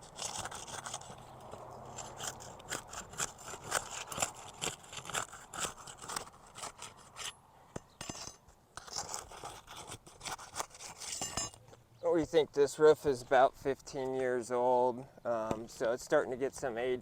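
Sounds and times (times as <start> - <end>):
flat bar scraping under shingles: 0.0 - 11.8.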